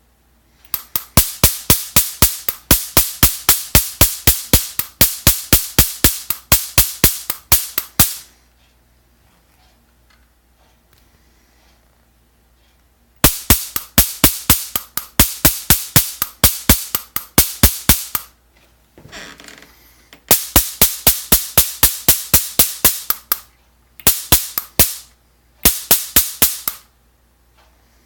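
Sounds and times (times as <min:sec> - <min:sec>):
stun rifle zap cracks: 0:00.7 - 0:08.3, 0:13.2 - 0:18.3, 0:20.2 - 0:23.4, 0:24.0 - 0:26.9.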